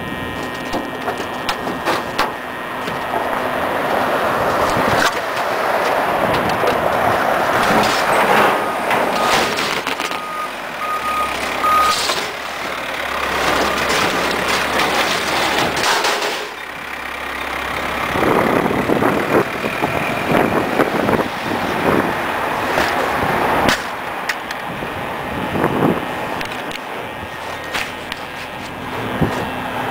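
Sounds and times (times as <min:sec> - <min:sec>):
low engine hum: 0:00.0 - 0:29.9
metal scraping: 0:00.3 - 0:16.8
reverse warning alarm beeping: 0:07.6 - 0:13.3.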